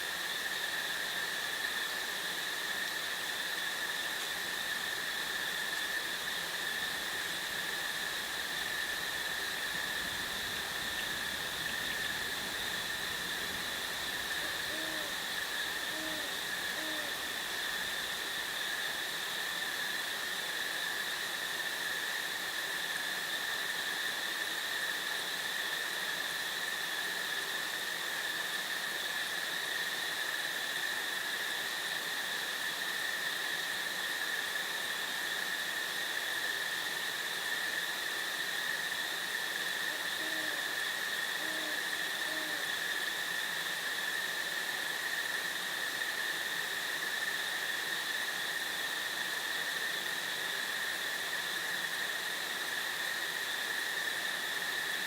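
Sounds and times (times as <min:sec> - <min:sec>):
high insect drone: 0:00.0 - 0:55.0
background hiss: 0:06.1 - 0:19.5
owl hooting: 0:13.2 - 0:17.4, 0:39.9 - 0:40.7, 0:41.4 - 0:42.7.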